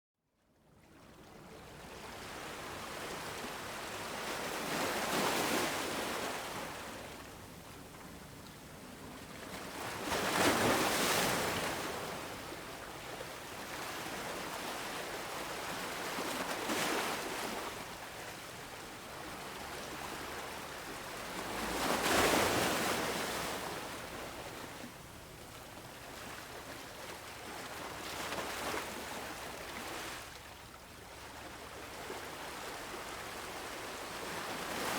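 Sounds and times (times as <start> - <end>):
ocean waves breaking on shore: 9.4 - 25.1.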